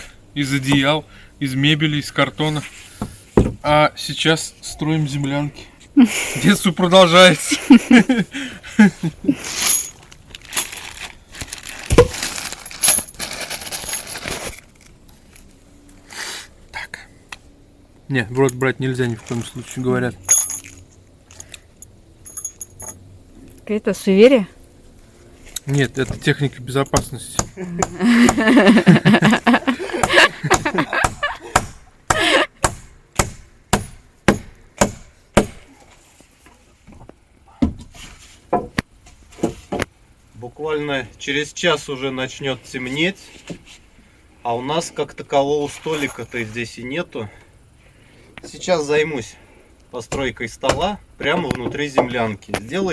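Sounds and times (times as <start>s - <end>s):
dull thump: 3.0s - 3.7s
handling rustles: 9.3s - 15.9s, 45.6s - 46.7s
small metal objects clinking: 9.5s - 14.6s, 19.2s - 23.0s, 45.7s - 46.6s
hammer striking wood: 27.0s - 28.4s, 30.0s - 35.7s, 50.1s - 50.9s.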